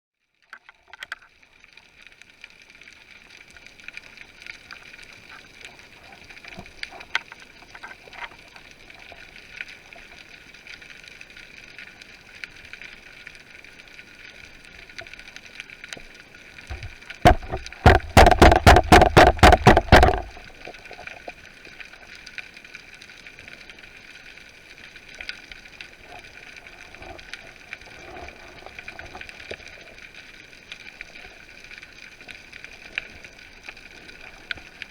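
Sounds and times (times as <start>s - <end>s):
rapid sharp knocks: 16.7s - 20.5s.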